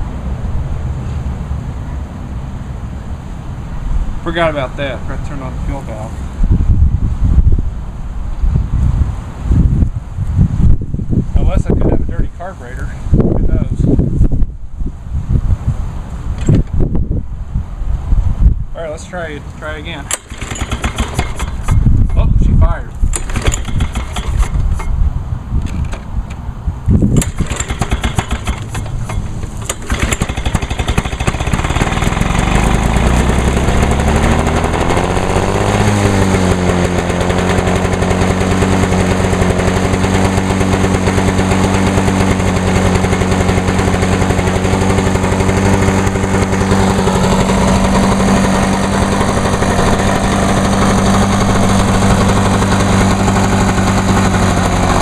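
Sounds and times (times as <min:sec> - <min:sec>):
lawn mower engine sputtering: 0:19.6 - 0:25.0, 0:27.0 - 0:55.0.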